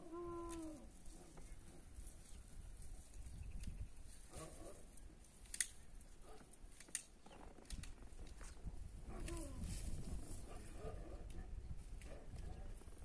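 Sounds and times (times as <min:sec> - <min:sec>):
sharp clicks: 0:05.4 - 0:05.8, 0:06.7 - 0:08.5.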